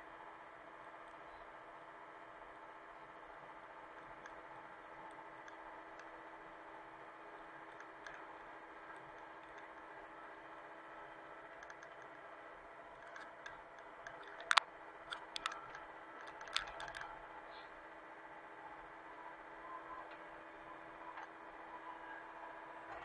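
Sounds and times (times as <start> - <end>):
excavator engine hum: 0.0 - 23.0
sharp clicks and knocks: 13.0 - 17.1.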